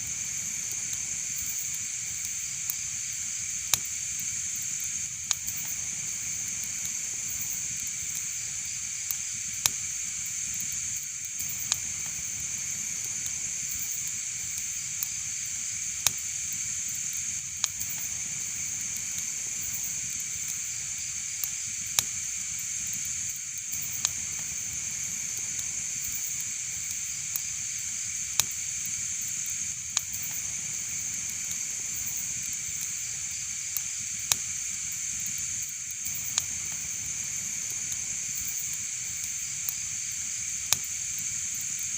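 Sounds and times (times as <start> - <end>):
fire crackling and hissing: 0.0 - 41.9
sharp pops of fire: 0.1 - 41.9.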